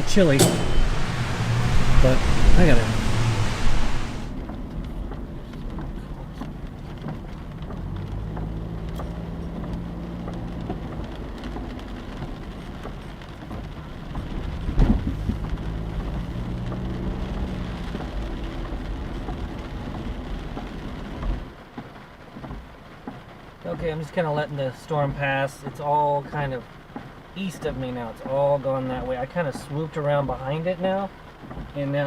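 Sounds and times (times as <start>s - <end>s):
loud bang: 0.0s - 4.3s
low hum: 0.0s - 4.4s
rain falling on a car: 0.0s - 32.0s.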